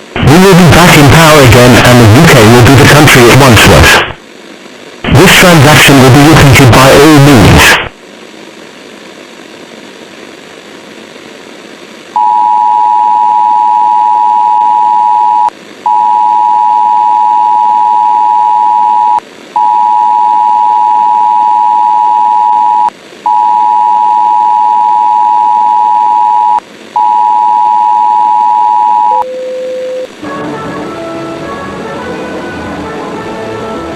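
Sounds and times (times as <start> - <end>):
brief lower beep: 12.2 - 30.1.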